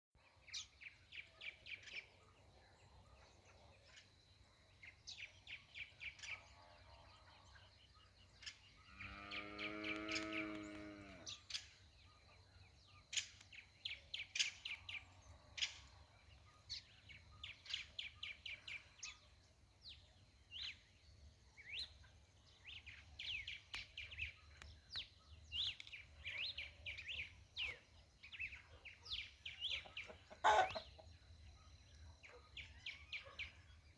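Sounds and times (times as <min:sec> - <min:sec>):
small birds chirping: 0:00.4 - 0:33.9
cow mooing: 0:08.9 - 0:11.3.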